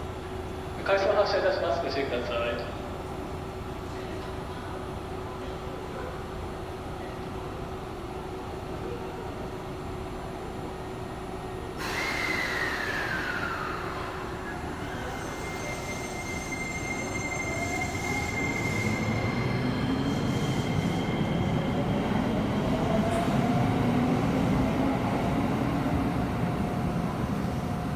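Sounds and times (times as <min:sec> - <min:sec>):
train wheel squeal: 0:11.8 - 0:22.3.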